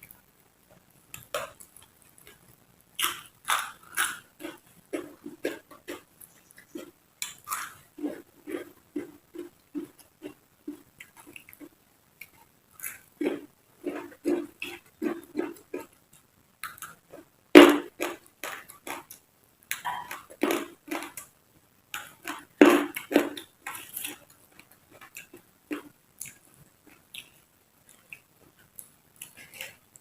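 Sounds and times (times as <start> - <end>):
crunchy chewing of raw vegetables: 3.0 - 16.0.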